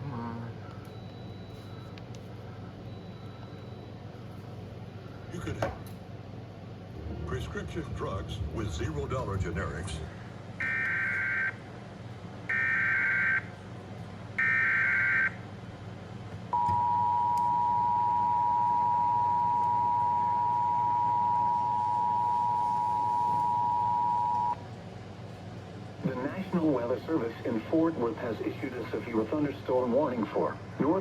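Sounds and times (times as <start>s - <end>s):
two-tone attention signal: 16.6s - 24.6s.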